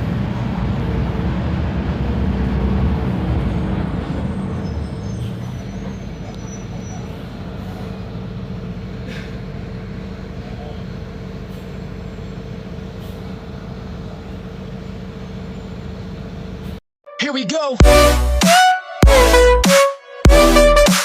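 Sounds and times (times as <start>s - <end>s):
bus engine running: 0.0s - 16.8s.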